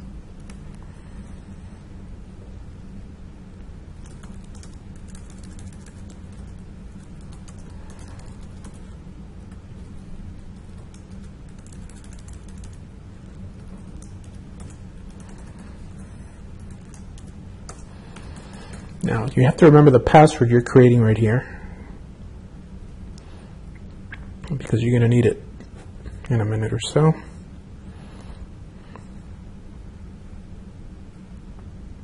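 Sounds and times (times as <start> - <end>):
low hum: 0.0 - 32.0
computer keyboard typing: 4.0 - 9.6, 10.4 - 12.8, 13.5 - 19.0.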